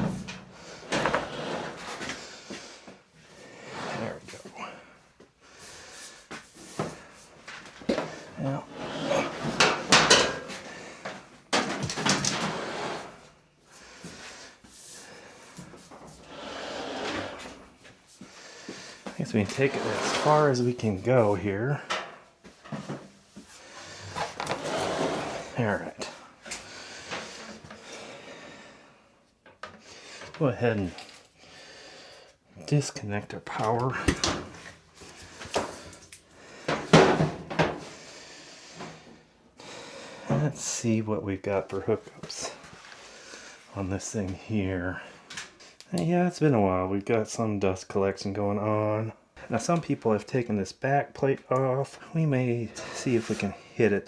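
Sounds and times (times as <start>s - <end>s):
power cord knocks and clunks: 0.0s - 1.2s
dryer scraping across floor: 0.0s - 4.4s, 7.8s - 18.0s, 19.1s - 21.9s, 22.6s - 28.2s.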